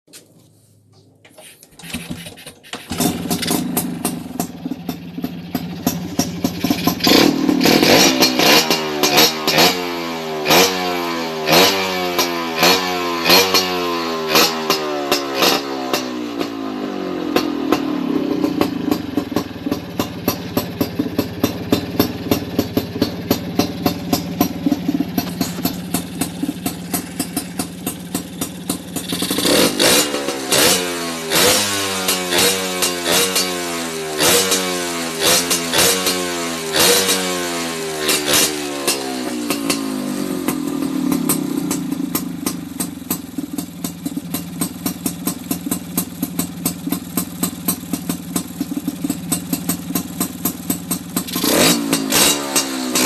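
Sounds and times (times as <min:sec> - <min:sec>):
engine revving: 0:05.5 - 0:42.6, 0:51.2 - 0:53.0.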